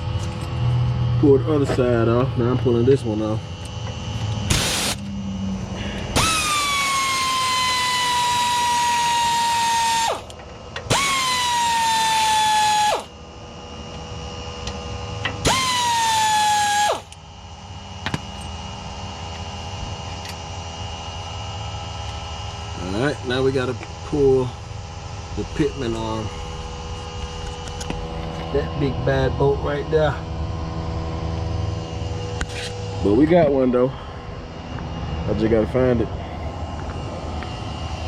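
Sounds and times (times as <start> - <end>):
power tool motor whine: 3.5 - 23.0.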